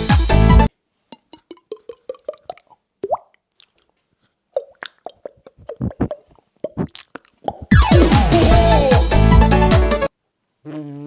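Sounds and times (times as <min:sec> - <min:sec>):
beatbox tongue clicks and cheek pops: 0:01.1 - 0:07.9.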